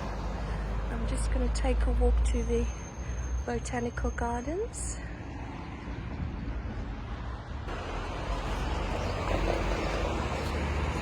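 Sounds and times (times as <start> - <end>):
road traffic rumble: 0.0 - 11.0.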